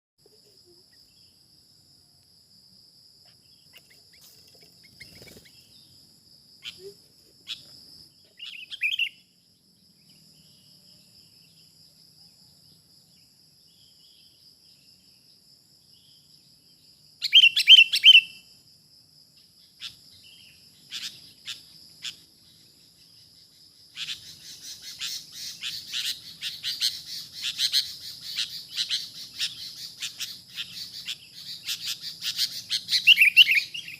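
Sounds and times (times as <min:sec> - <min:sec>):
birds chirping: 0:03.4 - 0:11.7, 0:19.8 - 0:33.9.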